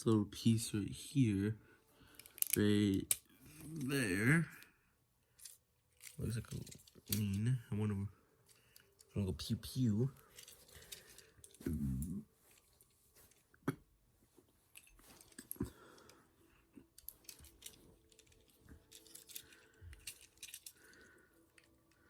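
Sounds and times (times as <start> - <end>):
plastic toy bricks clicking: 2.2 - 3.2
soft rustling: 5.3 - 22.0.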